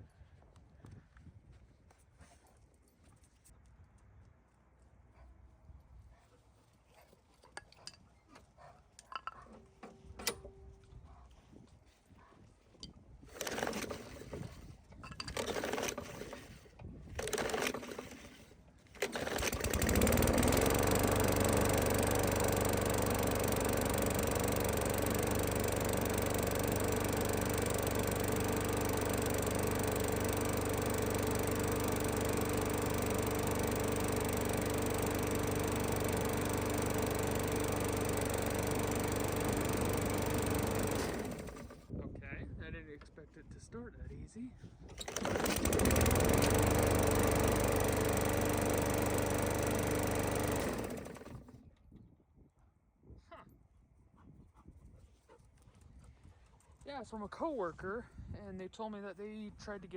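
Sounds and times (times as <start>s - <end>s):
lawn mower engine running: 13.3s - 41.9s, 44.9s - 51.6s.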